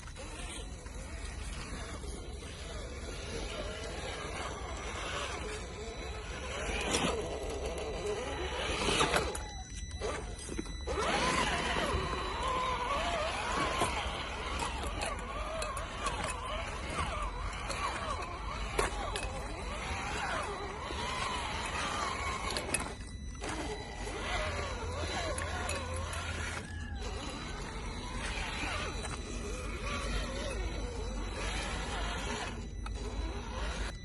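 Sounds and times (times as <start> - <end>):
toy truck motor whining: 0.0 - 34.0.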